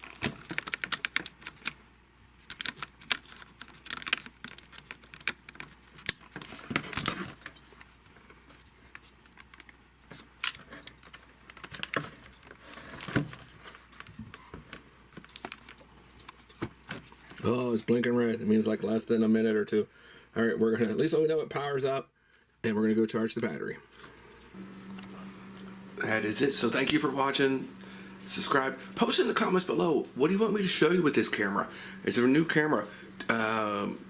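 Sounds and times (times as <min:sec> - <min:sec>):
plastic clicks and rattles: 0:00.0 - 0:01.8, 0:02.4 - 0:07.9, 0:10.4 - 0:13.4.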